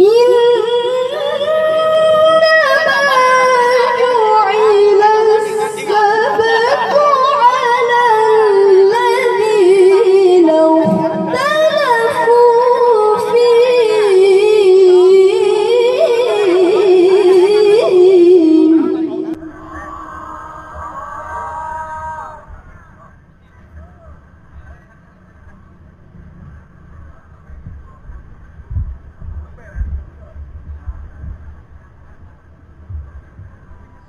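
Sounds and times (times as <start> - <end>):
girl reciting in melodic style: 0.0 - 20.1.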